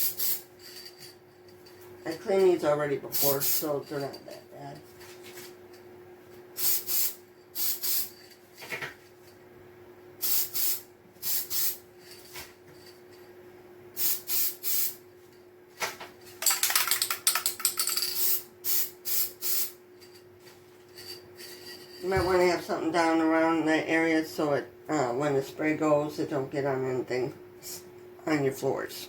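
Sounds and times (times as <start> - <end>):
aerosol can spraying: 6.6 - 8.1, 10.2 - 11.8, 14.0 - 15.0, 18.2 - 19.8.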